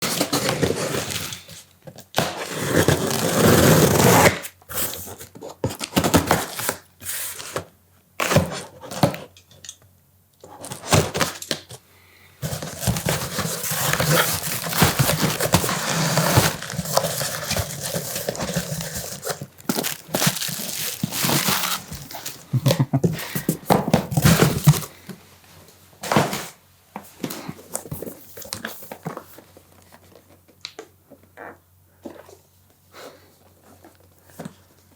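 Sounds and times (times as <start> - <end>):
packaging handling noise: 12.4 - 25.1.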